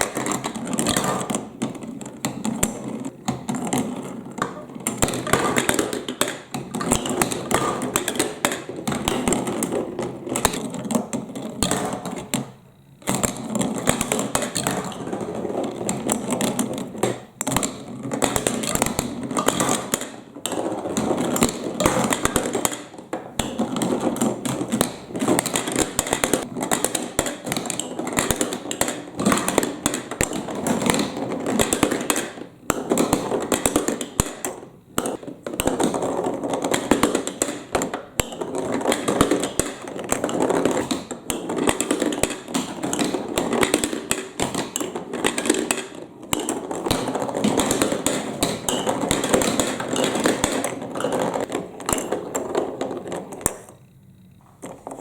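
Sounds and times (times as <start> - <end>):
marbles rattling down plastic tracks: 17.0 - 53.8.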